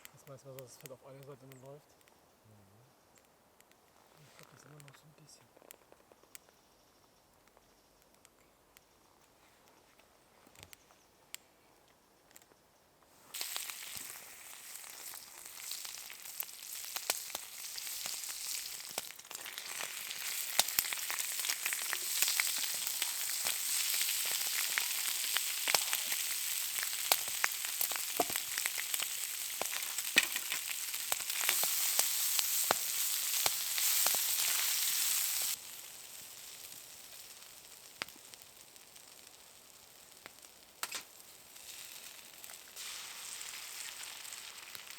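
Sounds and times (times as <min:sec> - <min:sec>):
food sizzling in a pan: 0:13.3 - 0:44.9
fat spattering pops: 0:13.4 - 0:35.5, 0:40.2 - 0:44.9.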